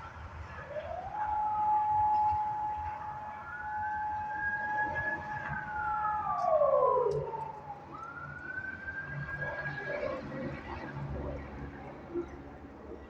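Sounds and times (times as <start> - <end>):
two-tone siren wailing: 0.6 - 11.3.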